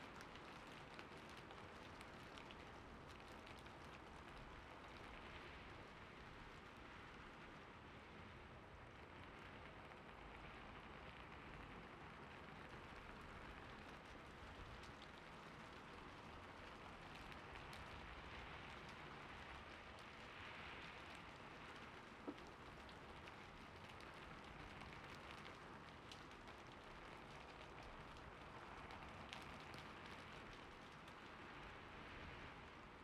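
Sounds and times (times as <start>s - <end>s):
faint light ticks: 0.0s - 5.5s, 13.5s - 32.3s
steady rain hiss: 0.0s - 33.0s.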